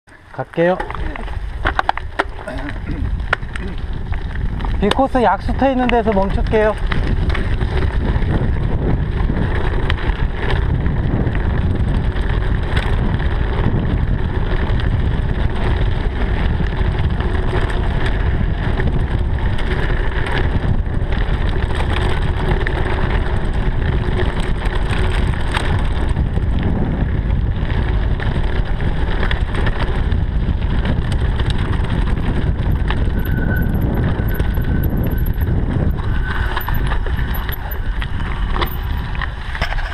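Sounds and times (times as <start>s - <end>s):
bike rattling over rough ground: 0.1s - 39.9s
wind rushing on microphone: 0.4s - 39.9s.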